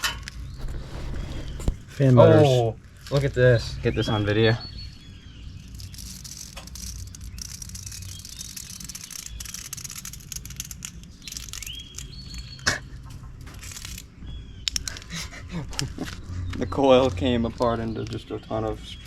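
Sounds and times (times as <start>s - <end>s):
low rumble: 0.5s - 2.2s
bird chirps: 3.6s - 19.0s
light clicks and rattles: 5.6s - 16.2s.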